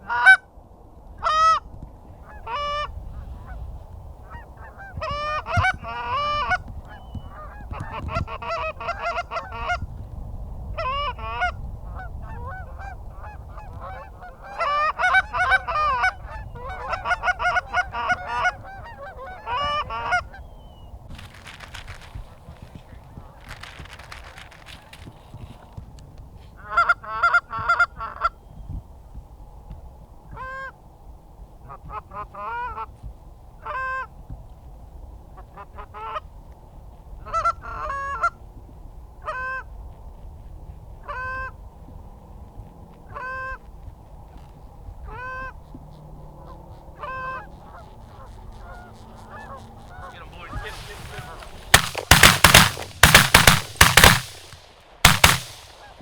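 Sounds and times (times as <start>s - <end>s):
goose honking: 4.3s - 9.8s, 12.2s - 20.4s, 45.1s - 54.4s
shotgun blasts: 50.1s - 56.0s.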